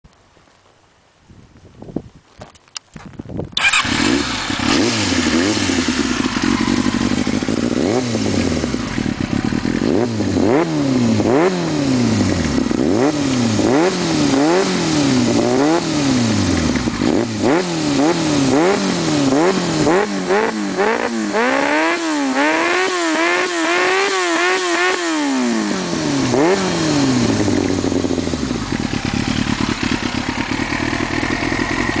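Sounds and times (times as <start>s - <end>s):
motorcycle engine revving: 3.6s - 32.0s.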